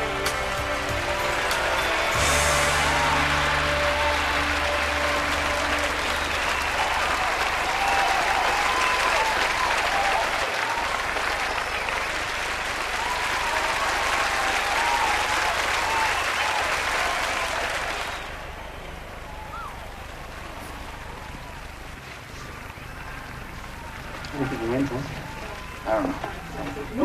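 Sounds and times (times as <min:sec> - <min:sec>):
people shouting: 0:00.0 - 0:10.9
audience applauding and cheering: 0:00.0 - 0:27.0.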